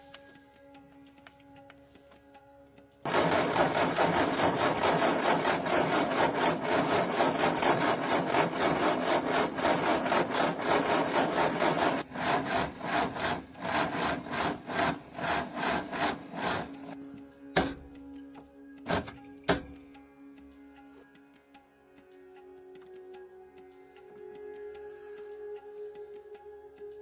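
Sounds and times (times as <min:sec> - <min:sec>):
rasping strokes on a surface: 0:03.1 - 0:17.0.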